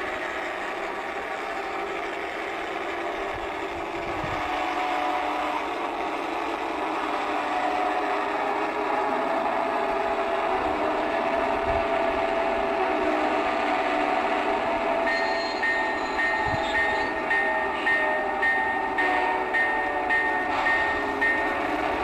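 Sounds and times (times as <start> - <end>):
diesel engine sound through small speaker: 0.0 - 12.0
steady ringing bell beat: 15.0 - 22.0.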